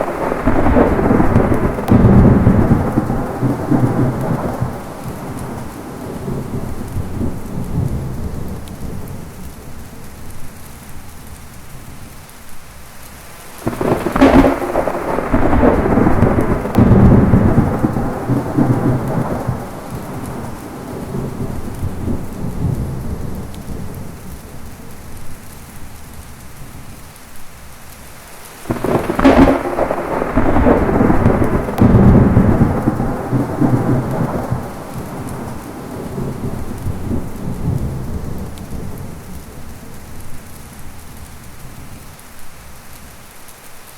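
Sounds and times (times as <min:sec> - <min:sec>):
thunderclaps: 0:00.0 - 0:12.2, 0:13.6 - 0:27.0, 0:28.6 - 0:42.2
heavy rain: 0:00.0 - 0:43.9.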